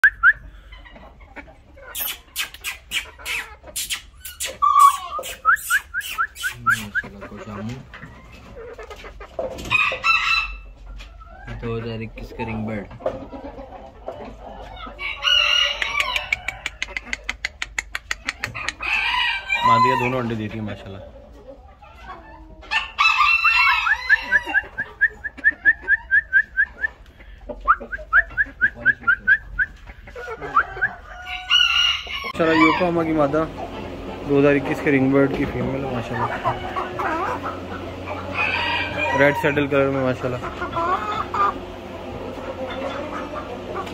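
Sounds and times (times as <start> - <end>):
chickens calling: 0.0 - 43.9
rapid rising chirps: 2.0 - 7.0.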